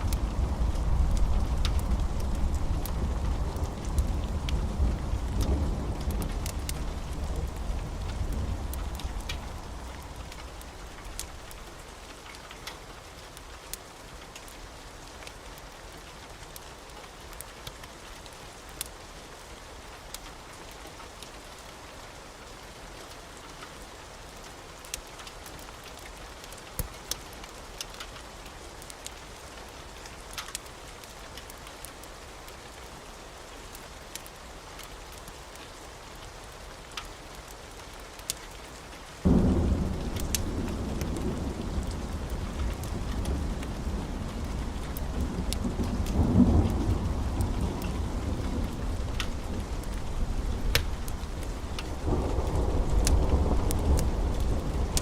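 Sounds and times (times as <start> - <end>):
sharp ticks and pops: 0.0 - 4.7, 30.3 - 30.7, 39.3 - 50.0, 50.6 - 55.0
steady rain: 0.0 - 55.0.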